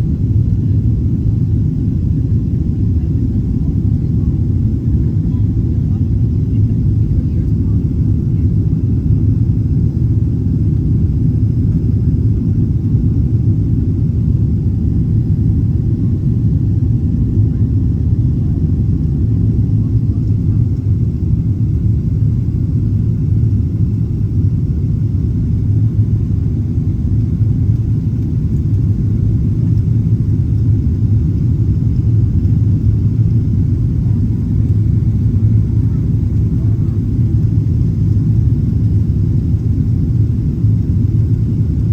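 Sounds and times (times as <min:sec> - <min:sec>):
airplane cabin engine rumble: 0:00.0 - 0:41.9.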